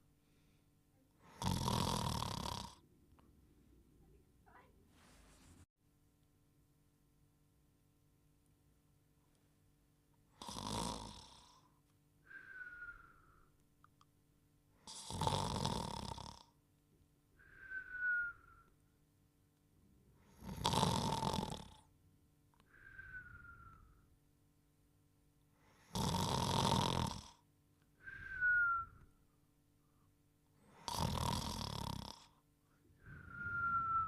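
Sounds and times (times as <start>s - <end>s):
cartoon snoring: 1.3s - 2.8s, 10.4s - 11.6s, 14.9s - 16.5s, 20.3s - 21.8s, 25.8s - 27.4s, 30.7s - 32.4s
descending whistle: 12.3s - 13.5s, 17.5s - 18.8s, 22.8s - 24.1s, 28.0s - 29.2s, 33.0s - 34.0s.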